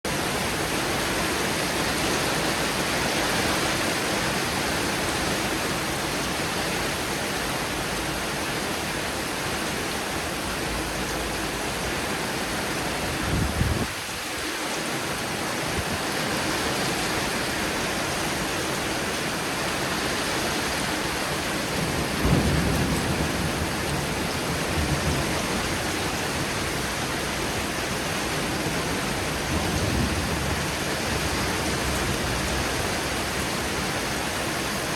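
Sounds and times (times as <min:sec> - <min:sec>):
heavy rain falling: 0:00.1 - 0:34.9
thunder rumbling: 0:21.6 - 0:33.8.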